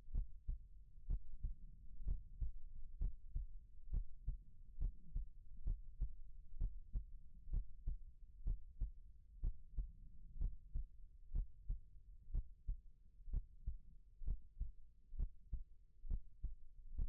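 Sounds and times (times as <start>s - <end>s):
faint low hum: 0.0s - 17.0s
slow heartbeat: 0.0s - 17.0s.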